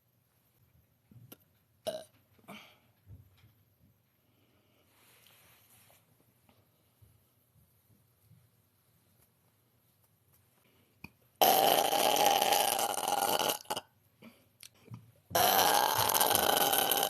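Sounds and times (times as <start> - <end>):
woman burping: 11.4 - 13.9, 15.3 - 17.0.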